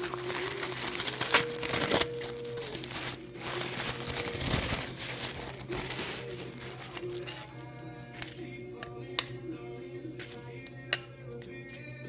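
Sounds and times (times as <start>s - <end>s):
packaging crinkling: 0.0s - 8.4s.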